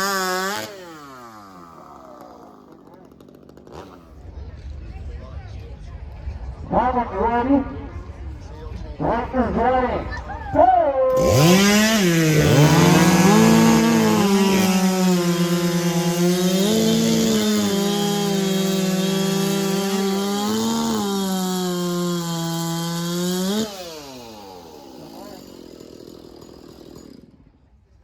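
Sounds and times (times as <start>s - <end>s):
chainsaws cutting logs: 0.0s - 4.3s, 11.0s - 27.8s.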